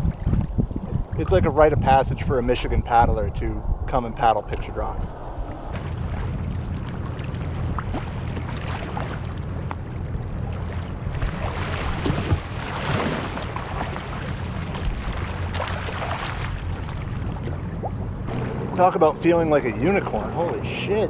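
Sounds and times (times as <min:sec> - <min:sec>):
water splashing against kayak: 0:00.0 - 0:01.3, 0:05.5 - 0:19.2
wind rumbling on microphone: 0:00.0 - 0:21.0.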